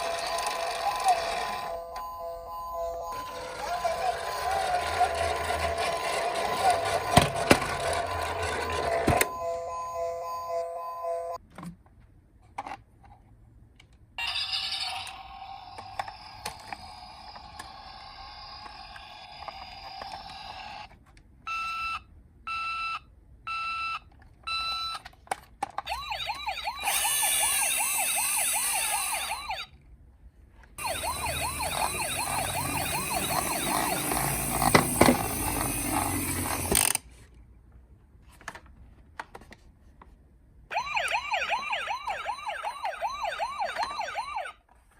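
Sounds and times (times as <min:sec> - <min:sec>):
toy electronic siren: 0:00.0 - 0:11.4, 0:14.2 - 0:20.9, 0:25.8 - 0:29.7, 0:30.8 - 0:36.9, 0:40.7 - 0:44.6.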